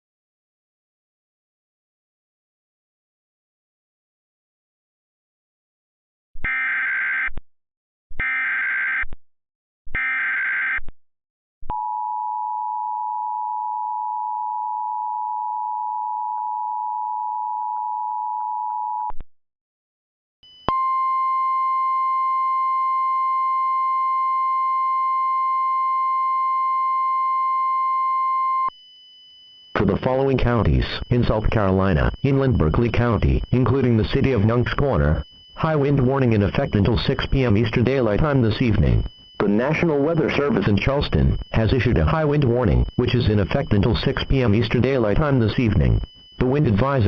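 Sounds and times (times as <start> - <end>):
warbling data tone bursts: 29.5 - 47.0
two-tone attention signal: 29.7 - 47.0.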